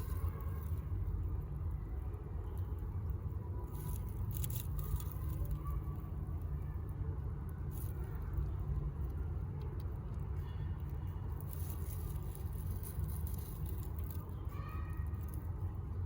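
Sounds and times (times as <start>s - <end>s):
low background rumble: 0.0s - 16.0s
rabbits rustling in nest: 11.1s - 15.5s.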